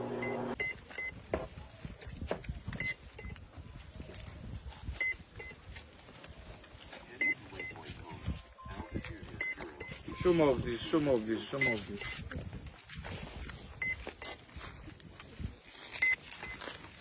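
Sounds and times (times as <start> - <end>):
short electronic beeps: 0.2 - 1.2, 2.8 - 3.4, 5.0 - 5.6, 7.2 - 7.8, 9.4 - 10.3, 11.6 - 12.2, 13.8 - 14.4, 15.9 - 16.6.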